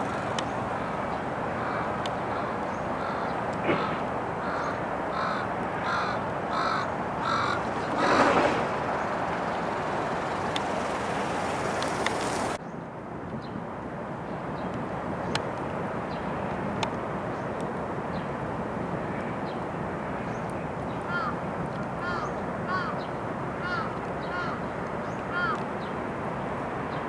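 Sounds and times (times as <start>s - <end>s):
crow cawing: 1.5s - 12.5s, 21.1s - 21.3s, 22.0s - 22.9s, 23.6s - 24.6s, 25.3s - 25.6s
steady background rush: 6.8s - 12.6s.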